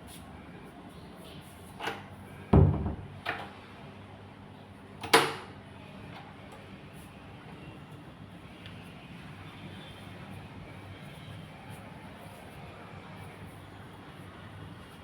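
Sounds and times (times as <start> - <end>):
knocks and thuds on wood: 2.6 - 3.1.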